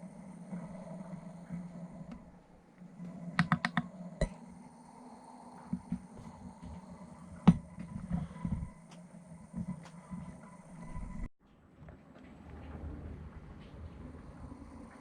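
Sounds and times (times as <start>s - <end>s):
gimbal motors humming: 0.0s - 11.3s.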